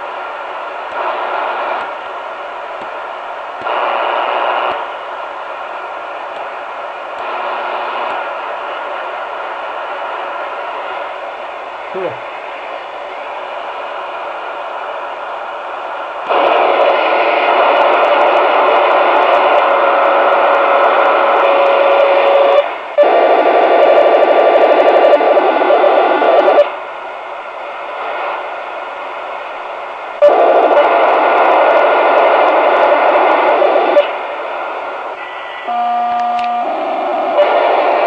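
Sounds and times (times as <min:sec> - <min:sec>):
steady radio tones: 0:00.0 - 0:38.0
radio interference buzzing: 0:00.9 - 0:01.9, 0:03.6 - 0:04.9, 0:07.2 - 0:11.1, 0:16.3 - 0:26.8, 0:30.2 - 0:38.0.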